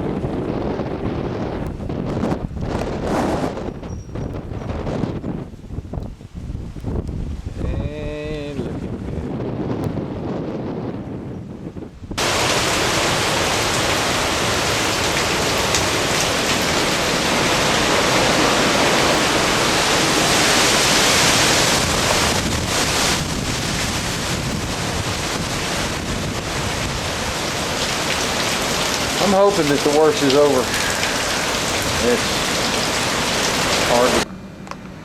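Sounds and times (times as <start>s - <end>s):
storm wind: 0.0s - 35.0s
driving rain: 12.2s - 35.0s.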